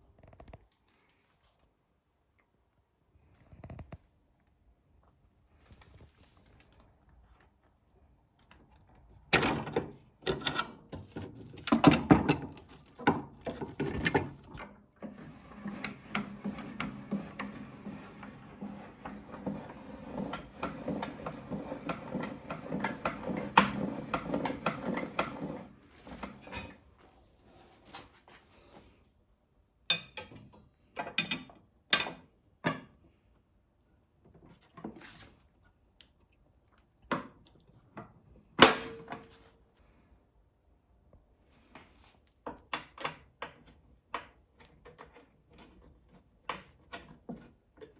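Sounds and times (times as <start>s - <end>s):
knocks and clatter of parts: 9.3s - 26.9s
rubbing and scraping: 11.0s - 28.8s.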